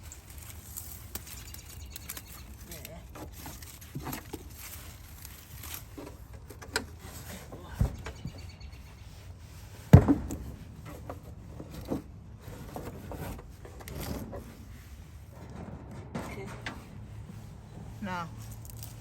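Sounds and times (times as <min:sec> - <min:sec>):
objects knocking and thudding: 0:05.9 - 0:08.4, 0:09.8 - 0:14.6, 0:15.3 - 0:18.6
loud sharp thump: 0:09.9 - 0:10.6.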